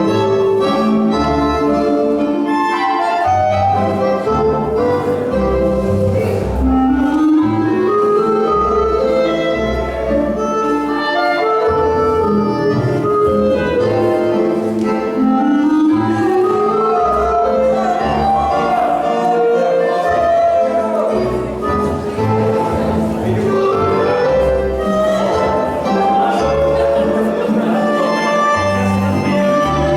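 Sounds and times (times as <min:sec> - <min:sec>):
dance tune with woodwind lines: 0:00.0 - 0:22.8.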